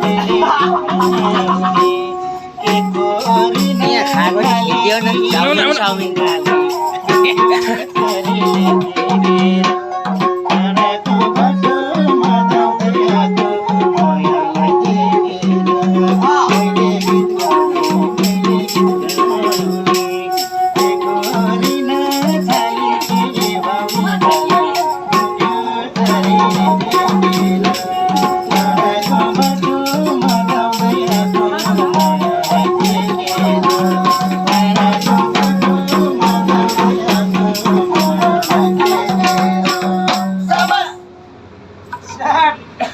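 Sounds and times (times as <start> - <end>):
hand drum beat: 0.0 - 40.8
rattling percussion: 0.0 - 40.8
folk music on sarangi: 0.0 - 41.2.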